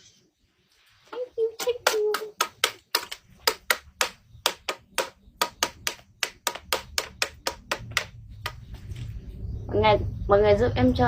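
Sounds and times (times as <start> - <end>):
rapid sharp knocks: 1.7 - 8.7.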